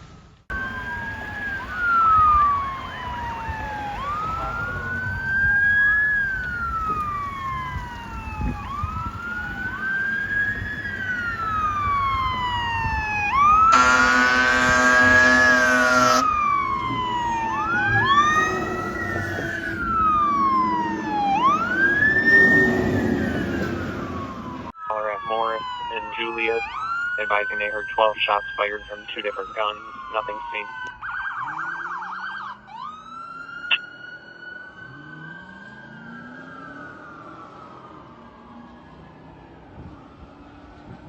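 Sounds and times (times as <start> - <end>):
fire engine sirens wailing: 0.0 - 41.0
fire truck air horn blast: 13.7 - 16.4.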